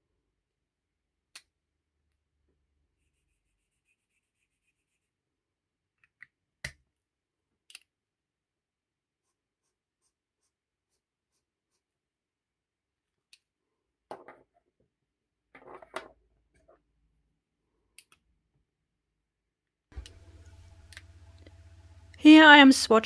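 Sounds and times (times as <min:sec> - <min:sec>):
marker scratching on paper: 0:03.0 - 0:05.1
soft evenly spaced ticks: 0:20.0 - 0:23.0.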